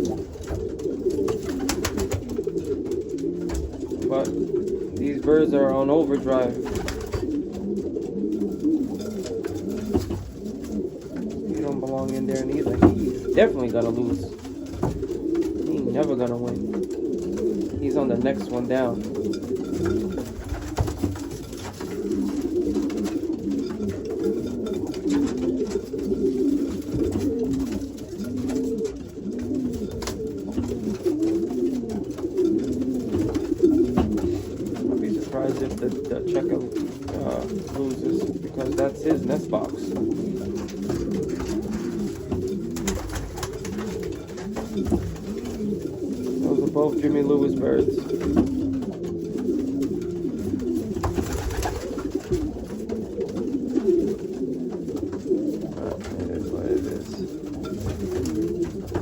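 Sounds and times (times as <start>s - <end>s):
pigeons cooing: 0.0s - 59.0s.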